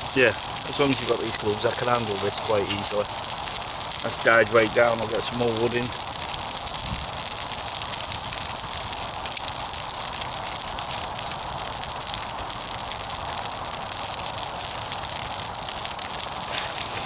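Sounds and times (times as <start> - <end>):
wood fire hissing and crackling: 0.0 - 17.0.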